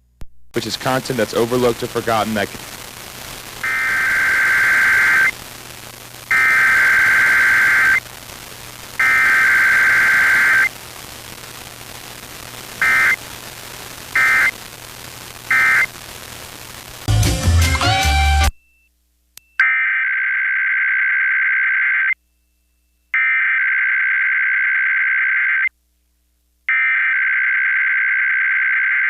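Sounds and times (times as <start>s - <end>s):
steady hiss: 0.6s - 17.7s.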